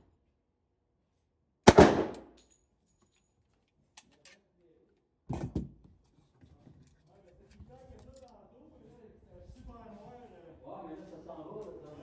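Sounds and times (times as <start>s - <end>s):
muffled pistol shot: 1.7s - 2.3s.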